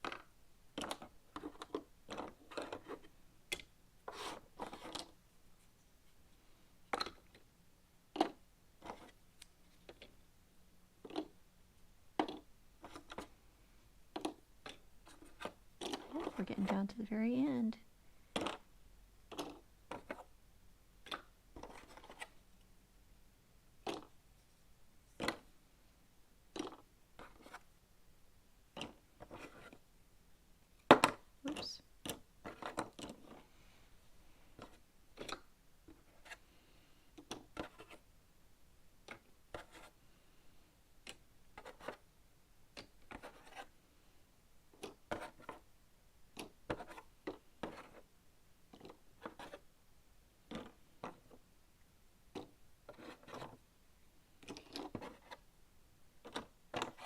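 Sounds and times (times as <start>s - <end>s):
puzzle pieces clicking and scraping: 14.2s - 16.9s.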